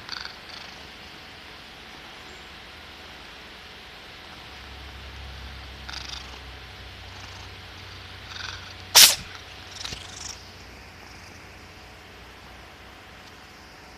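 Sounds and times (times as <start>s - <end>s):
cat purring: 0.0s - 0.9s, 5.8s - 11.5s
cat sneezing: 9.0s - 10.3s.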